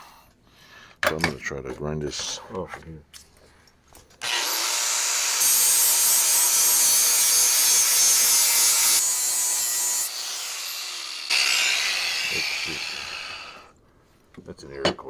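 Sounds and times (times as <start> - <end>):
angle grinder grinding metal: 4.2 - 13.7.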